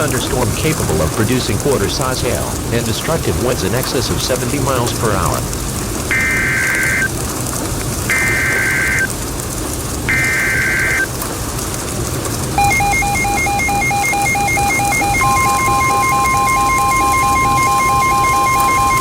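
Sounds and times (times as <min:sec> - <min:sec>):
steady hiss: 0:00.0 - 0:14.2
buzzy digital screeches: 0:06.1 - 0:07.1, 0:08.1 - 0:09.1, 0:10.1 - 0:11.1, 0:12.6 - 0:19.0
two-pitch electronic alert beeping: 0:08.1 - 0:09.1, 0:12.6 - 0:19.0.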